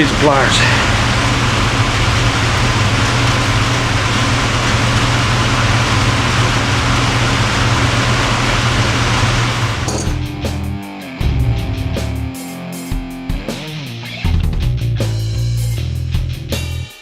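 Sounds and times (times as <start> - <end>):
low mechanical hum: 0.0 - 10.2.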